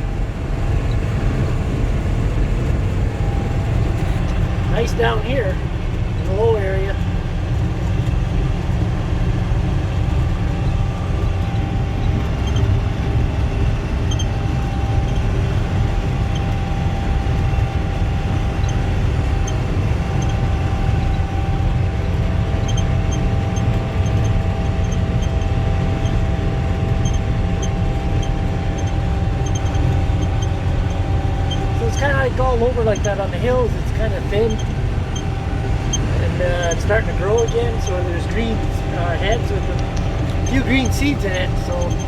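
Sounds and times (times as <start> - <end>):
steady high whine: 0.0 - 42.0
swather low drone: 0.0 - 42.0.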